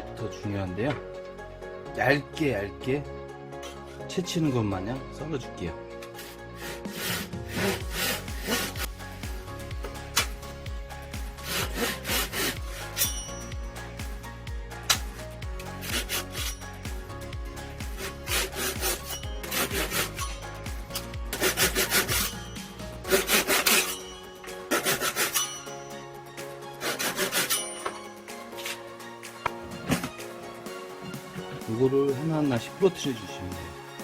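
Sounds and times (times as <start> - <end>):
hand saw cutting wood: 6.1 - 8.9, 11.4 - 13.3, 15.8 - 16.6, 18.0 - 20.4, 21.3 - 25.7, 26.8 - 28.8.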